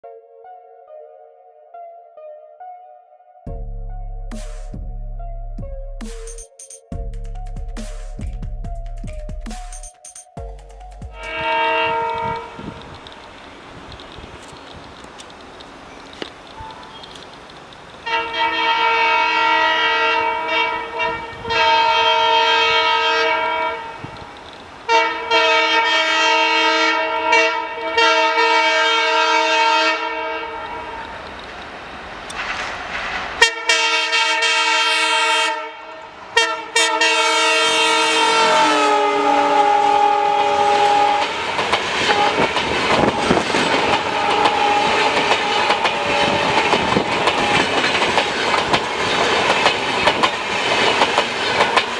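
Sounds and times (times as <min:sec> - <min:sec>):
locomotive air horn blasts: 0:11.2 - 0:12.9, 0:18.0 - 0:24.1, 0:24.9 - 0:31.0, 0:33.4 - 0:47.7
train wheels clacking over rail joints: 0:41.2 - 0:51.9.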